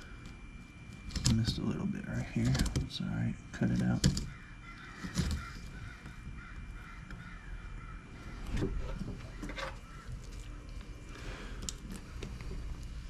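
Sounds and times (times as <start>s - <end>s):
harsh bird calls: 4.2s - 10.1s.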